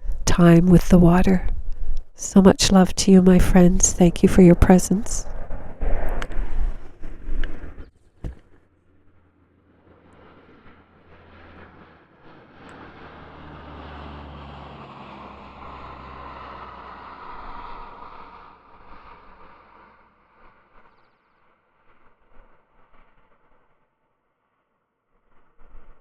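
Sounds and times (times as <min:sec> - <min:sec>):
airplane engine drone: 0:00.0 - 0:07.8, 0:08.7 - 0:20.6.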